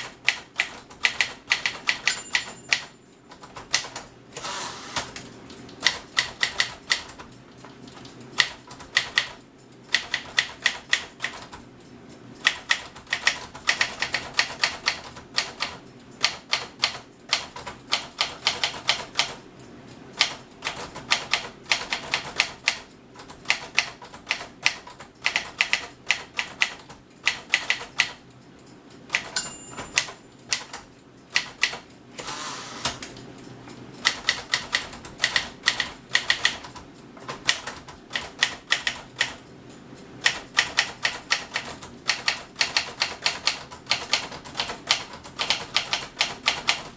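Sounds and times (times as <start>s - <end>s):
typewriter key strikes: 0.2s - 4.1s, 29.1s - 31.8s
typewriter bell ringing: 1.9s - 3.0s, 29.3s - 30.3s.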